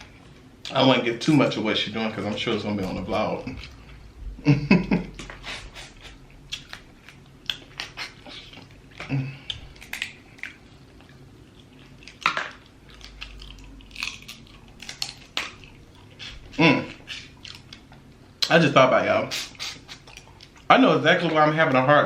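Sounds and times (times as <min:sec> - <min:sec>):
chewing and mouth sounds: 0:02.1 - 0:04.2, 0:04.8 - 0:18.6, 0:19.2 - 0:21.8
crab shell cracking: 0:09.4 - 0:16.3.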